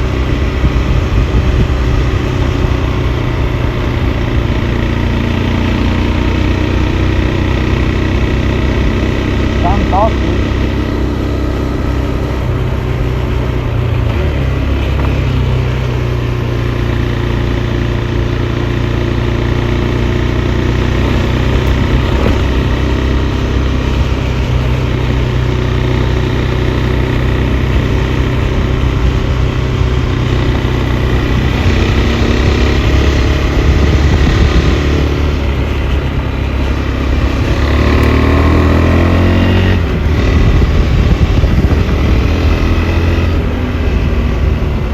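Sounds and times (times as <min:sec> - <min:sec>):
motorcycle engine cruising: 0:00.0 - 0:44.9.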